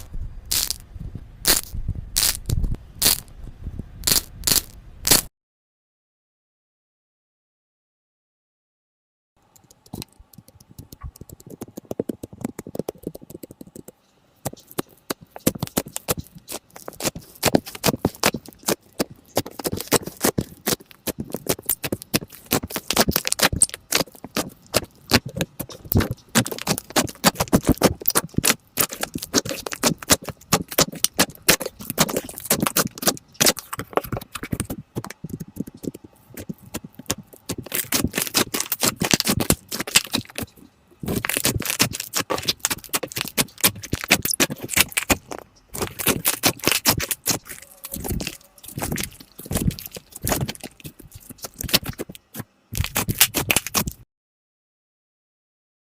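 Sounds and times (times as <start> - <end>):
slime squeezed by hand: 14.5 - 54.0.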